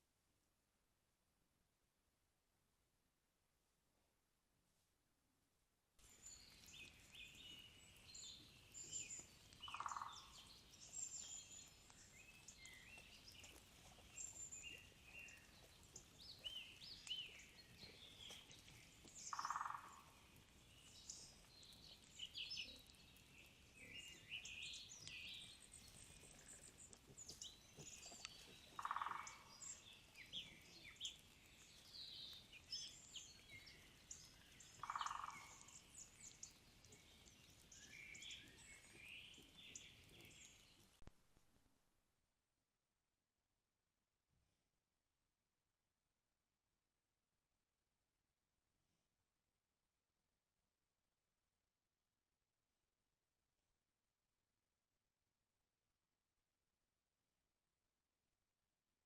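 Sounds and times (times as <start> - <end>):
songbirds chorus: 6.1 - 41.0.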